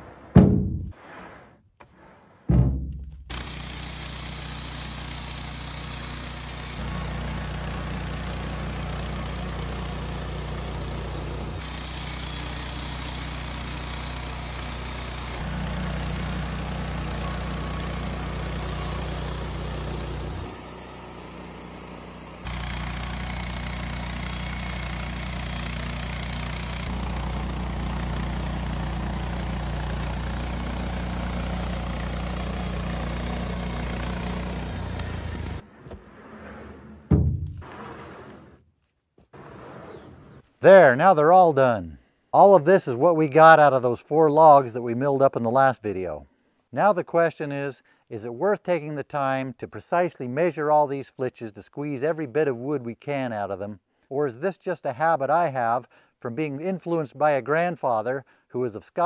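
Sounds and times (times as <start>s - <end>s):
sawmill engine humming: 3.0s - 35.7s
band saw cutting wood: 3.2s - 36.7s.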